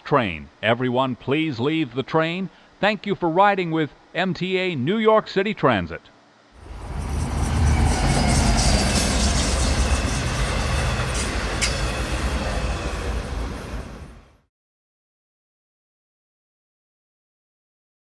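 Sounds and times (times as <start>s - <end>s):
subway train rumbling and rattling: 6.6s - 14.4s.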